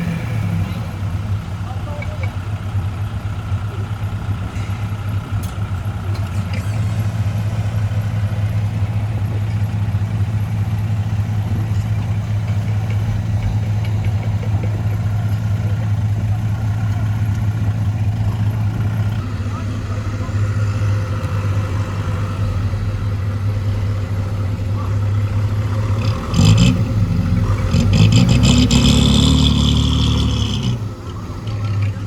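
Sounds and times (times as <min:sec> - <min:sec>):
diesel engine running: 0:00.0 - 0:32.0.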